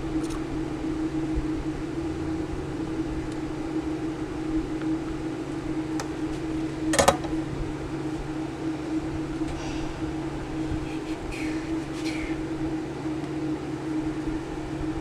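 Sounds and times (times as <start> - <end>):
mechanical hum: 0.0 - 15.0.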